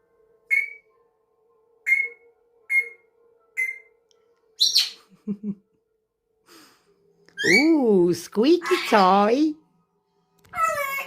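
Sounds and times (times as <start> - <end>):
parrot squawk: 0.5 - 0.8, 1.8 - 3.0, 3.6 - 3.9, 4.6 - 5.0, 7.4 - 7.6
parrot squeaking: 0.5 - 0.9, 1.8 - 3.0, 3.6 - 3.9, 4.6 - 5.0, 7.3 - 7.8.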